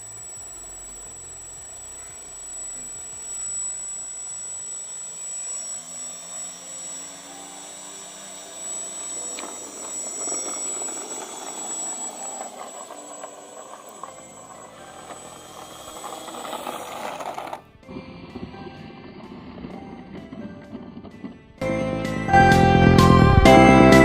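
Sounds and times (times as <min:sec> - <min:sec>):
electric motor whining: 0:00.0 - 0:24.0
air rushing from propeller: 0:07.3 - 0:23.2
rapid clattering: 0:08.6 - 0:21.8.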